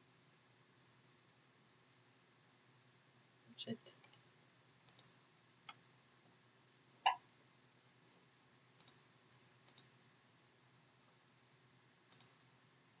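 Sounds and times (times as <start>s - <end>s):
computer mouse clicking: 4.0s - 4.2s, 4.9s - 5.1s, 8.8s - 9.9s, 12.1s - 12.4s.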